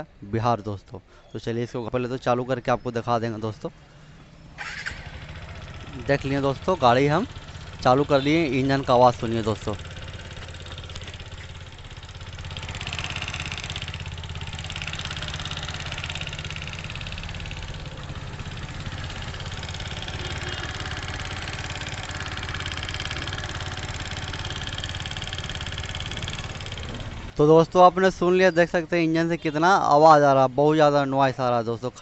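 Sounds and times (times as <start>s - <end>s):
motorcycle engine idling: 3.5s - 27.4s
rapid engine knocking clatter: 4.9s - 27.3s.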